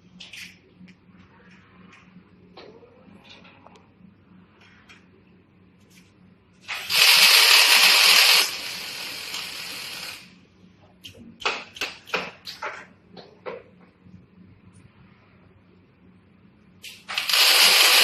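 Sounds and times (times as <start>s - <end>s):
welding machine hiss: 6.6s - 10.4s, 16.8s - 18.0s.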